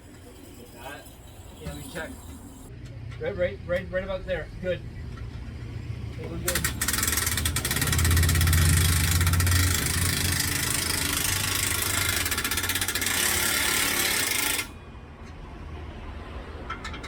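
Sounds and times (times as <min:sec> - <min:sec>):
impact wrench hammering: 0:06.4 - 0:14.8.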